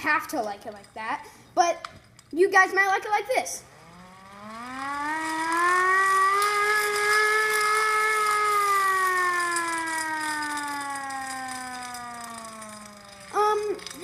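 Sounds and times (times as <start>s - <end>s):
hand-cranked air raid siren wailing: 3.6s - 14.0s.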